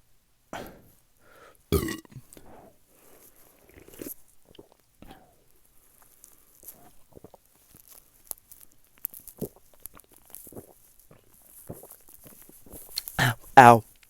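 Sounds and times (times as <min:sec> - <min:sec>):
sipping and swallowing: 0:01.7 - 0:02.6, 0:03.5 - 0:05.4, 0:06.7 - 0:07.9, 0:09.2 - 0:13.5
small mouth clicks: 0:03.6 - 0:13.5.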